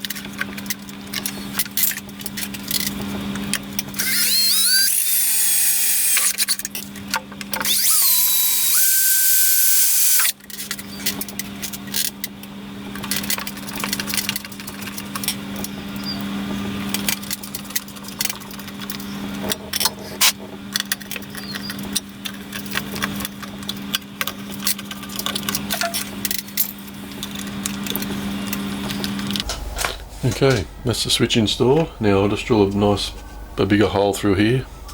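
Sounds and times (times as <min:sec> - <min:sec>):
steady low hum: 0:00.0 - 0:34.9
power drill whining: 0:04.0 - 0:06.4, 0:07.6 - 0:10.3.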